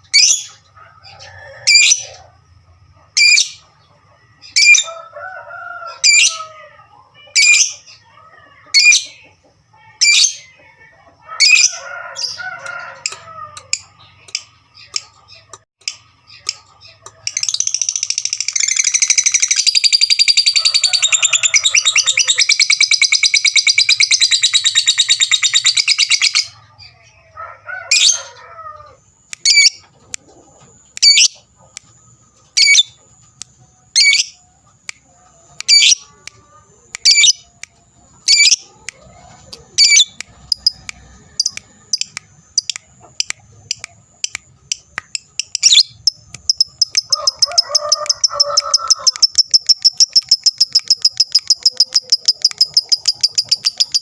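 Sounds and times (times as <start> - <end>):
lovebird chattering trill: 17.2 - 26.5, 29.4 - 29.8, 31.0 - 31.4, 32.6 - 32.9, 34.0 - 34.4, 35.6 - 36.0, 37.0 - 37.4, 38.3 - 38.6, 39.8 - 54.0
lovebird sharp chirps: 31.0 - 31.4, 34.0 - 34.4, 35.6 - 36.0, 37.0 - 37.4, 38.2 - 38.6, 39.8 - 54.0.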